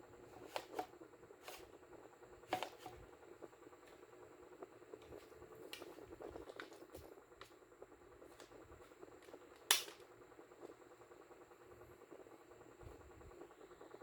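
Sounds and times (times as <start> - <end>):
toy gun clicks and rattles: 9.2 - 10.1.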